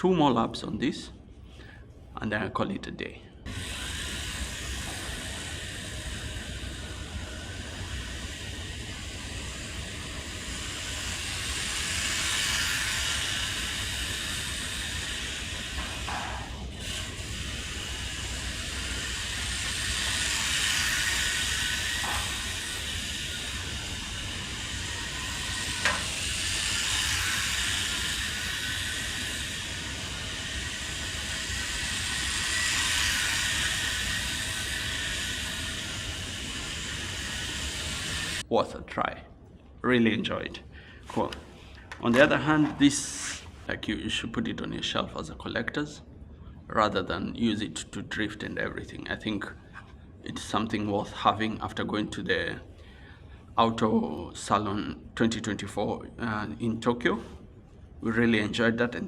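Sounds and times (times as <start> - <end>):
rc car motor whine: 3.5 - 38.4.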